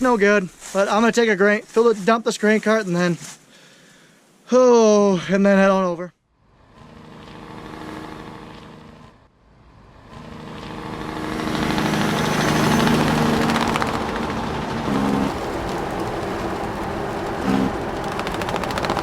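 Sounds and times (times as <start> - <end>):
tractor engine running: 6.7 - 19.0.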